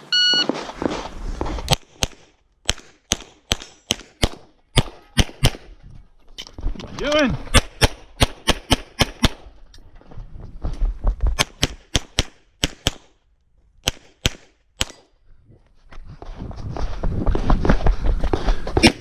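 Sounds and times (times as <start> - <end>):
pistol shots: 1.7 - 5.7, 11.4 - 13.1.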